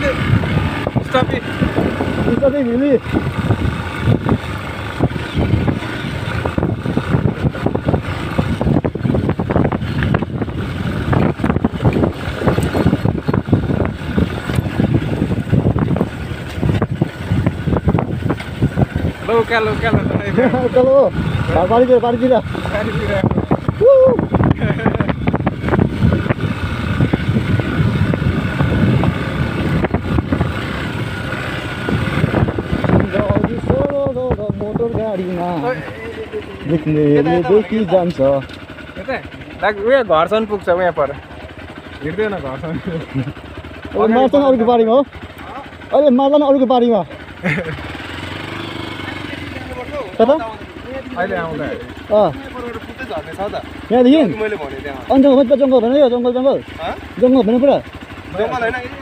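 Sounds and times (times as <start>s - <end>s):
wind buffeting microphone: 0.0s - 35.6s
motorcycle engine running: 0.0s - 59.0s.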